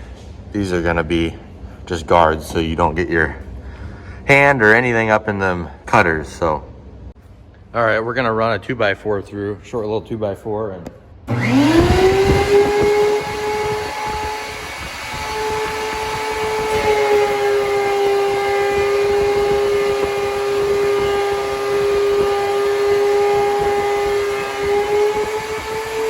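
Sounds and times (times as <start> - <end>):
thickness planer whining: 11.3 - 26.0.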